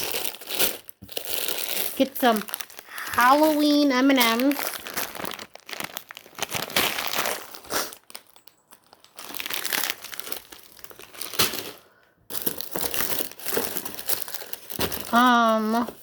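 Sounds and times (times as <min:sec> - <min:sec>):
plastic wrappers crinkling: 0:00.0 - 0:16.0.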